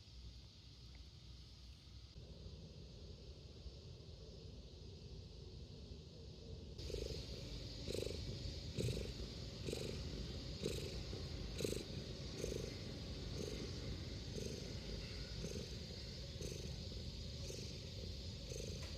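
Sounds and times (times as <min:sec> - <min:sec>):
cat purring: 0:06.8 - 0:18.9.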